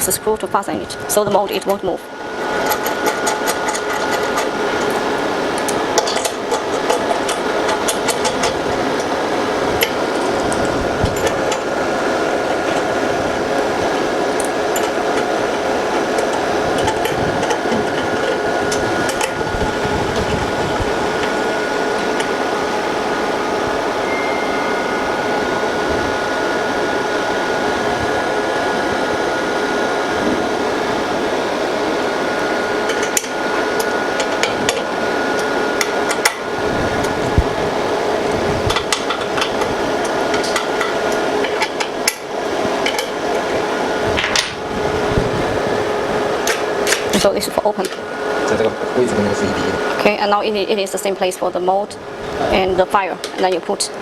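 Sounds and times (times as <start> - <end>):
machine cooling fan whirring: 0.0 - 54.0
steady machine tone: 0.0 - 54.0.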